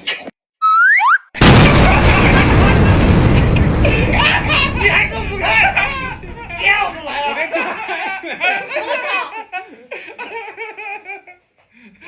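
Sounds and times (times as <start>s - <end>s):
loud noisy blast: 1.4s - 7.3s.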